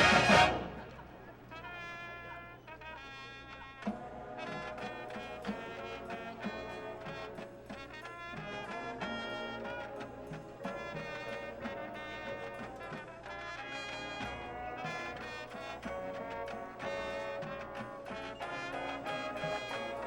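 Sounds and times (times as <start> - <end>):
drum hits: 0.0 - 1.0
brass holding chords: 0.0 - 20.0.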